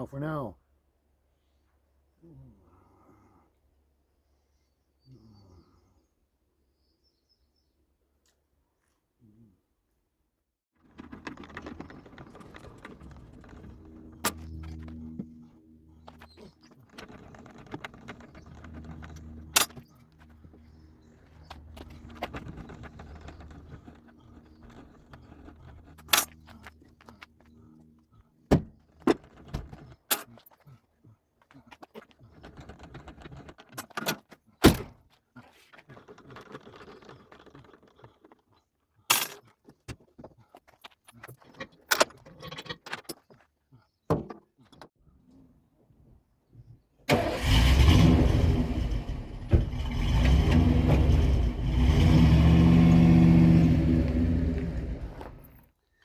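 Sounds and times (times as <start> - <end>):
clicks knocks and rattles: 10.8 - 14.8
truck engine running: 11.2 - 28.1, 47.1 - 55.5.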